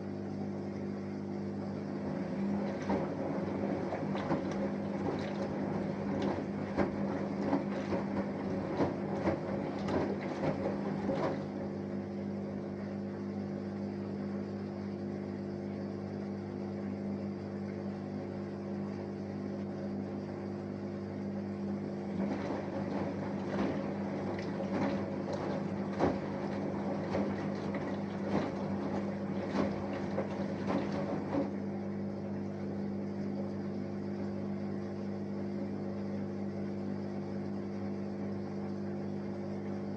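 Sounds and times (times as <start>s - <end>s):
washing machine hum: 0.0s - 39.9s
laundry tumbling in water: 1.4s - 13.1s, 21.6s - 37.7s.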